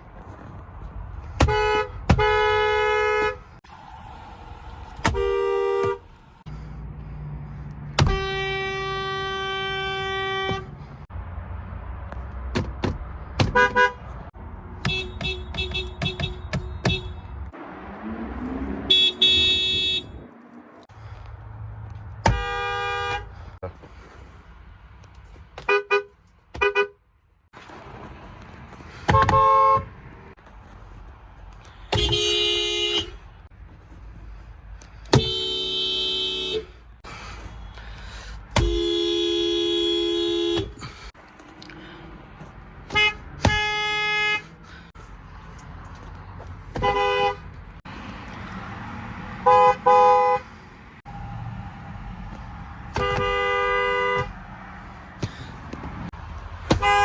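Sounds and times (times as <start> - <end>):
car horns honking: 1.3 - 3.6, 5.0 - 6.2, 7.9 - 11.1, 13.4 - 17.7, 18.3 - 20.3, 22.2 - 23.6, 25.6 - 27.0, 29.0 - 30.1, 31.8 - 33.4, 35.1 - 41.1, 42.8 - 44.8, 46.7 - 47.6, 49.3 - 52.0, 52.8 - 54.6, 56.6 - 57.0.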